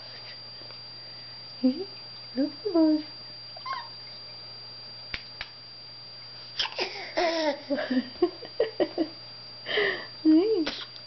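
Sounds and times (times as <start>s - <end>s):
baby babbling and giggling: 3.6s - 3.9s, 6.6s - 7.7s.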